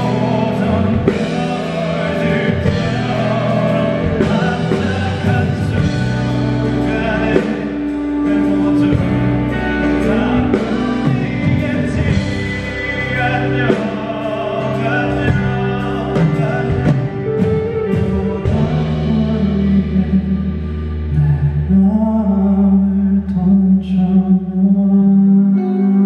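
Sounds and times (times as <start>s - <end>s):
man singing with live band: 0.0s - 26.0s.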